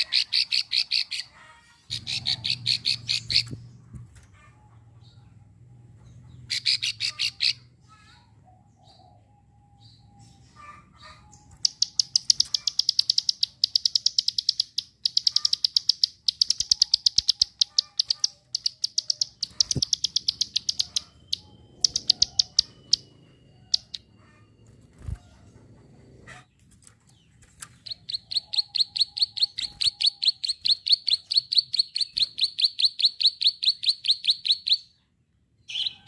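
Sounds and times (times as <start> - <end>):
bird clicking calls: 11.6 - 23.1.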